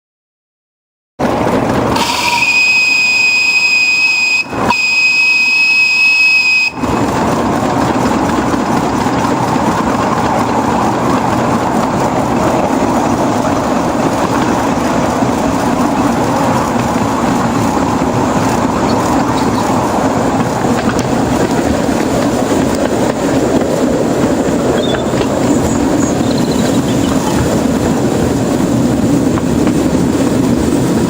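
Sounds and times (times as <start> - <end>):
moving train running noise: 1.2 - 31.0
locomotive whistle blasts: 1.9 - 7.0.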